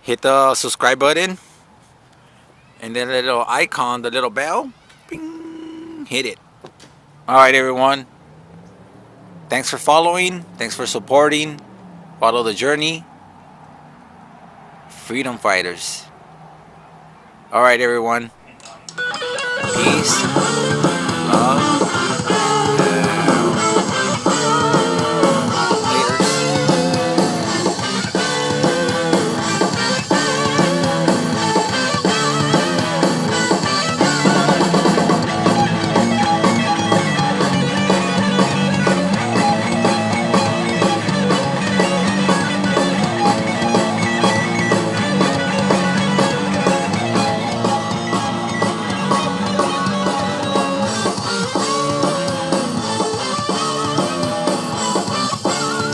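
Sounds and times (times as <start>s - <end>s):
rock music with guitar and drums: 19.0s - 55.9s.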